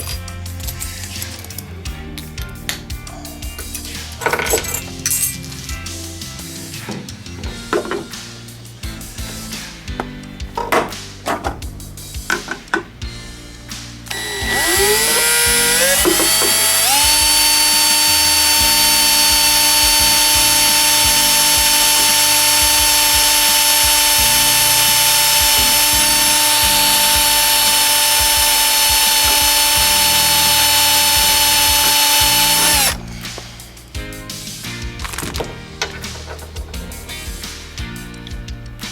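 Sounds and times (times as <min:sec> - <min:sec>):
electric drill spinning: 0:14.1 - 0:33.0.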